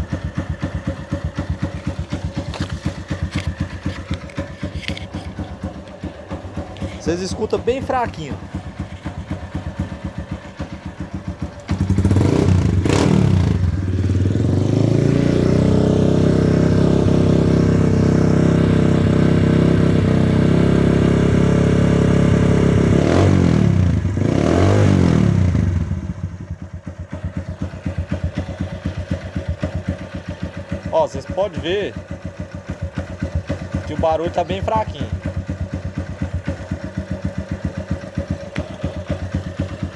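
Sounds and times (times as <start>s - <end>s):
faint engine ticking: 0.0s - 14.6s, 25.5s - 39.9s
motorcycle engine revving: 0.0s - 39.9s.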